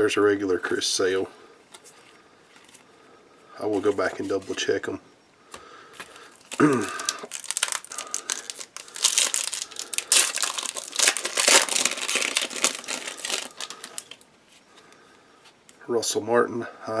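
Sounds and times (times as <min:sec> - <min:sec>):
plastic wrapper tearing and crinkling: 0:06.3 - 0:14.2.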